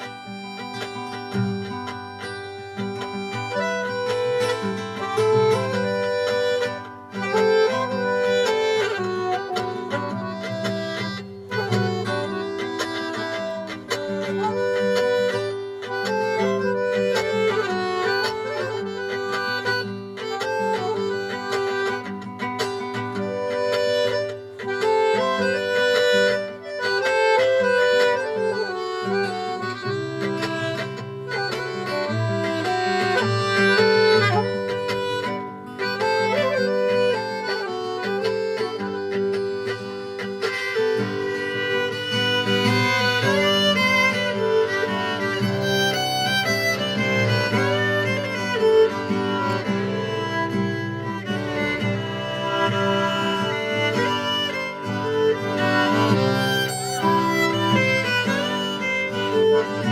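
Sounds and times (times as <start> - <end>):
accordion: 0.0 - 59.9
guitar: 0.0 - 59.9
saxophone: 0.0 - 59.9
violin: 0.0 - 59.9.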